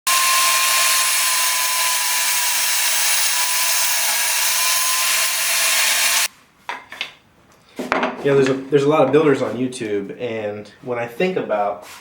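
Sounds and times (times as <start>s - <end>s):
power tool motor running: 0.0s - 6.3s.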